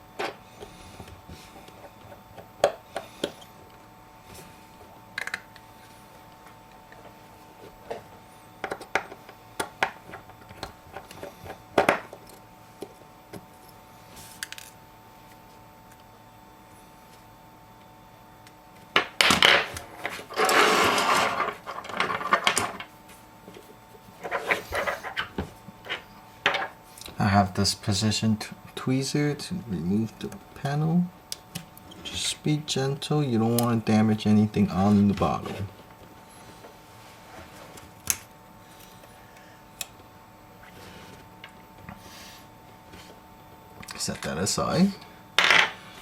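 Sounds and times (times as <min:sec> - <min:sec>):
faint steady hum: 0:00.0 - 0:46.0
tools scraping and rubbing: 0:19.8 - 0:22.8, 0:23.5 - 0:26.8.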